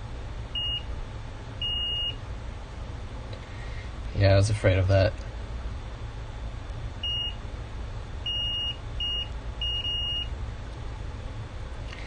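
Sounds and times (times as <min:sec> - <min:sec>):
low hum: 0:00.0 - 0:12.0
multimeter beeps: 0:00.6 - 0:00.9, 0:01.6 - 0:02.2, 0:07.0 - 0:07.4, 0:08.3 - 0:10.3.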